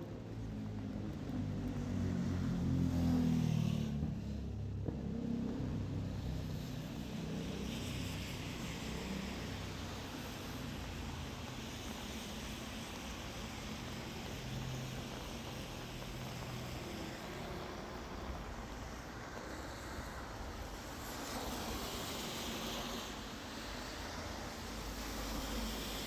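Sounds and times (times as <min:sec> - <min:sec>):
steady rainfall: 0:05.6 - 0:26.0.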